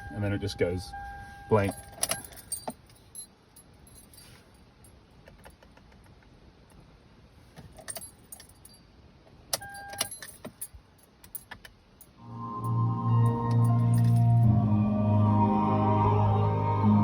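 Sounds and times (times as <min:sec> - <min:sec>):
car keys jingling: 0:00.0 - 0:05.6, 0:07.6 - 0:14.4.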